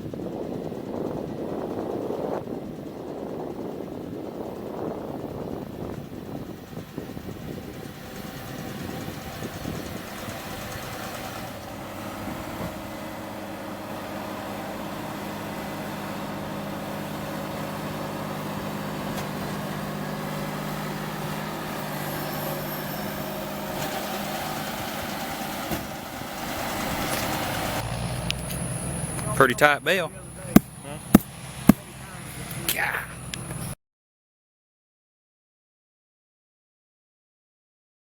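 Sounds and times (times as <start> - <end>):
tractor engine running: 0.0 - 33.8.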